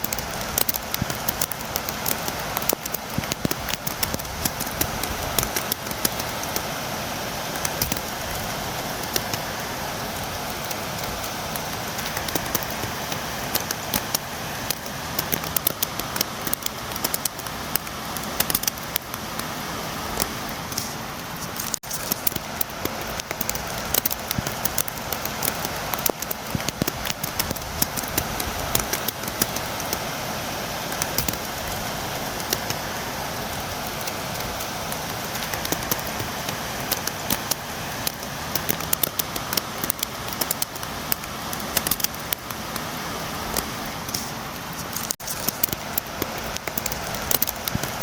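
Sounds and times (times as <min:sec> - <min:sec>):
raindrops tapping on window: 0:00.0 - 0:06.8, 0:21.5 - 0:30.0, 0:43.6 - 0:48.0
hiss of falling rain: 0:00.0 - 0:48.0.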